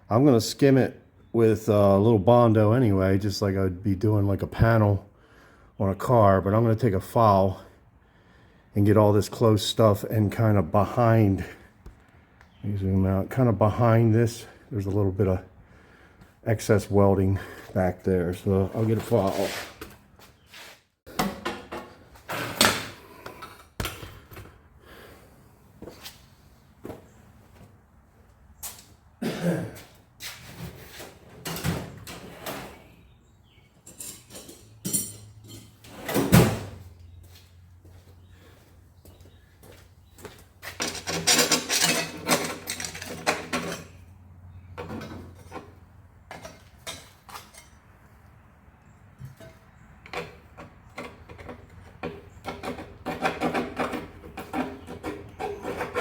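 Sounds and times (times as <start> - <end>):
hand file rasping on steel: 53.0 - 56.0.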